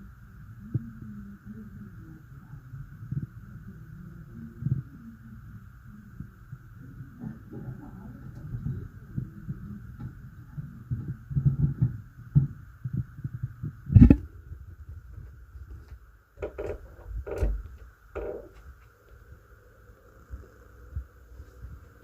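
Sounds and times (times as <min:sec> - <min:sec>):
steady hum: 0:00.0 - 0:22.0
muffled thuds through ceiling: 0:06.2 - 0:19.0.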